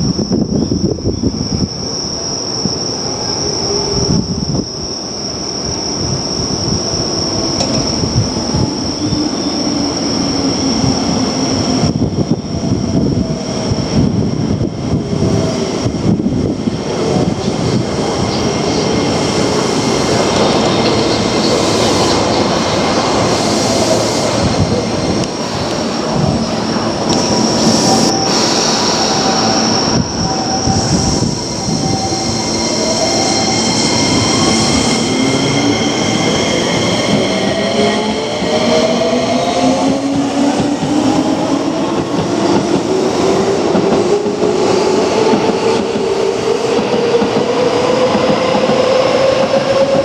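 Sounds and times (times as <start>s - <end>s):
electric train on rails: 0.0s - 50.0s
steady high-pitched tone: 17.3s - 39.6s.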